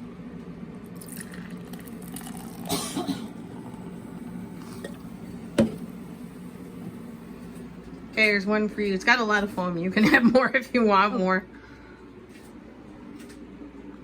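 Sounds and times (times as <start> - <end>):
low hum: 0.0 - 9.6
splashing fizz: 1.0 - 2.7
drink pouring into glass: 1.0 - 7.6.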